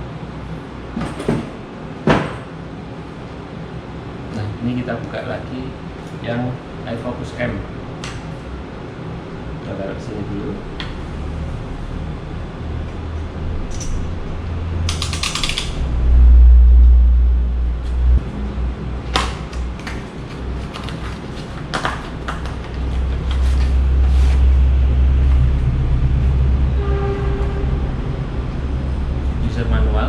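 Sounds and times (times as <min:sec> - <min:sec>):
low rumble of objects moved: 0:09.8 - 0:30.0
parts clicking and knocking: 0:14.8 - 0:15.8
packaging rustling: 0:19.4 - 0:24.2.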